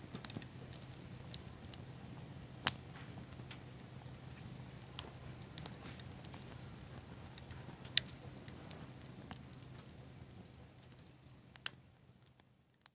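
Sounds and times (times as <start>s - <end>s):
bonfire crackling: 0.0s - 12.9s
bonfire pops: 0.0s - 12.9s.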